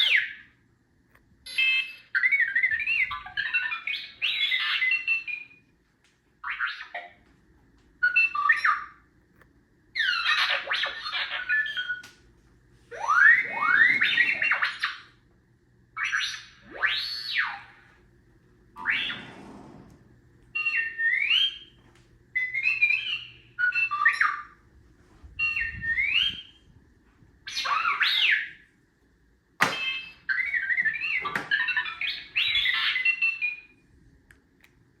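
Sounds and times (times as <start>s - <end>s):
robot warbling beeps and whistles: 1.6s - 5.6s, 12.9s - 15.1s, 16.0s - 17.9s, 20.6s - 21.7s, 22.4s - 24.6s, 25.4s - 26.6s, 29.9s - 33.7s.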